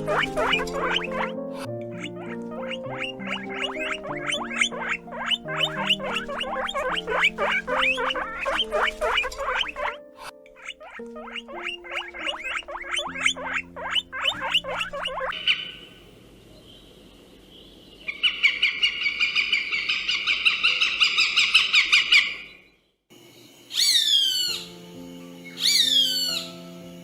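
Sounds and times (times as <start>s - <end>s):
bird chirps and trills: 0.0s - 16.0s, 25.4s - 26.6s
loud falling bird calls: 0.0s - 16.0s.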